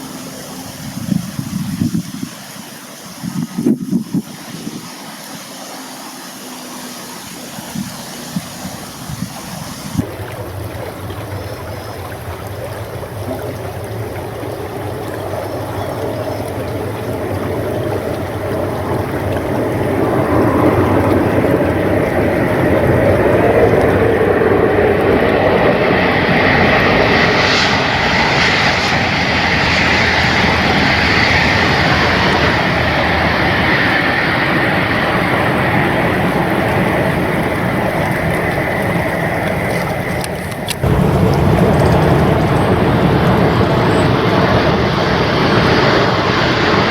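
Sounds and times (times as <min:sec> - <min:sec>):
train rushing noise: 0:00.0 - 0:10.2, 0:13.6 - 0:46.9
faint steady whine: 0:27.7 - 0:44.8.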